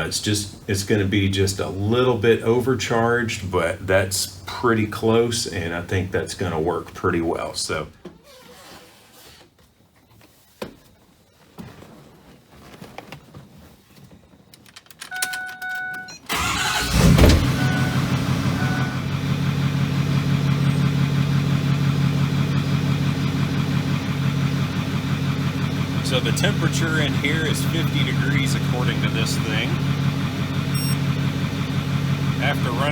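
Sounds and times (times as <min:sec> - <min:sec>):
truck engine cranking and starting: 0:14.8 - 0:32.9
engine idling: 0:16.3 - 0:32.9
brief beep: 0:17.5 - 0:19.0, 0:30.7 - 0:31.0.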